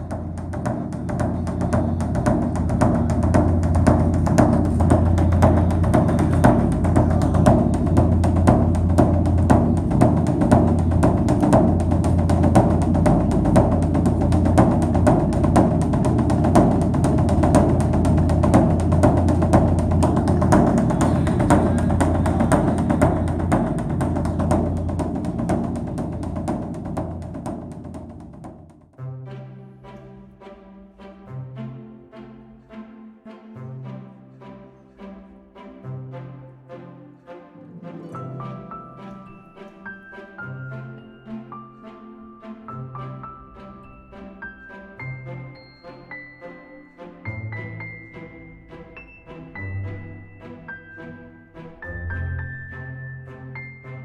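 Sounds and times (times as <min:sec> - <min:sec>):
low steady drone: 0:00.0 - 0:27.9
fast even drumming: 0:00.0 - 0:29.0.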